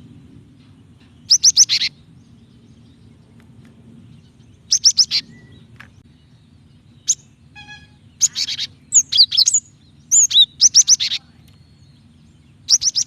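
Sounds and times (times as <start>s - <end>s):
tit chirping: 8.2s - 11.3s.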